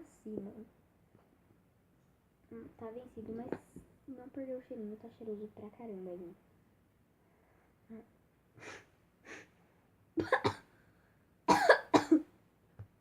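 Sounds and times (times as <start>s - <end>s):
faint sniffs: 8.6s - 9.6s
girl coughing: 10.2s - 10.7s, 11.5s - 12.3s.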